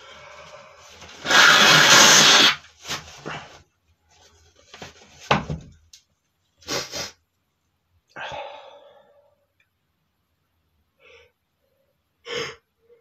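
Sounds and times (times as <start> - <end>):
breaths and sniffs: 6.6 - 7.2.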